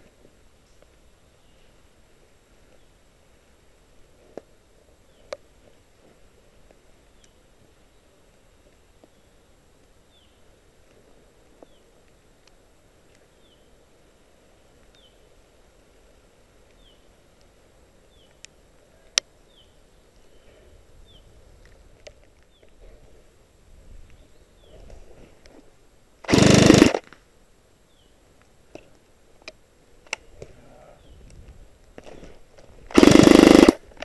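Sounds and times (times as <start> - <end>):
sharp click: 26.2 - 27.1, 32.9 - 34.0.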